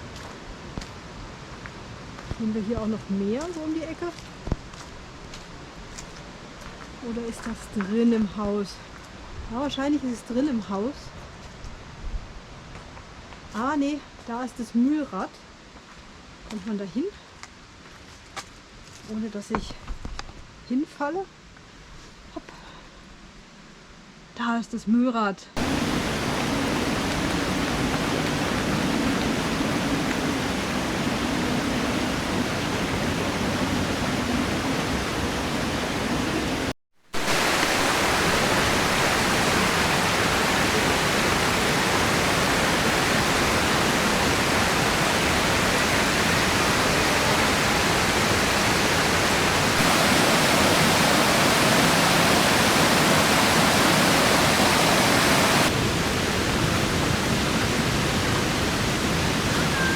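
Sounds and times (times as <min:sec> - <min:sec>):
stream water rushing: 0:25.6 - 0:59.9.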